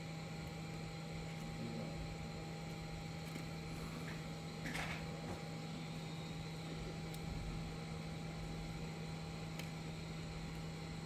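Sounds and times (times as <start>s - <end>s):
steady electrical hum: 0.0s - 11.0s.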